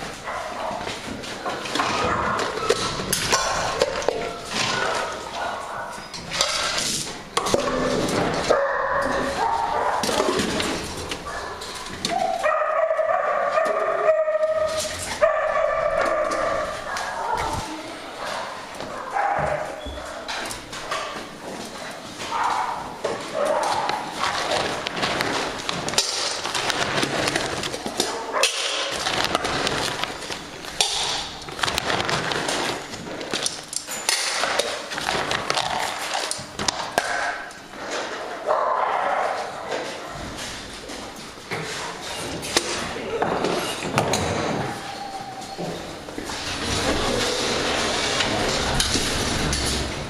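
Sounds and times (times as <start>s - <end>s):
dogs barking and yipping: 0.0s - 6.7s, 7.7s - 25.4s, 26.4s - 31.1s, 38.4s - 40.5s, 43.2s - 48.2s
dogs howling and whining: 44.1s - 46.0s.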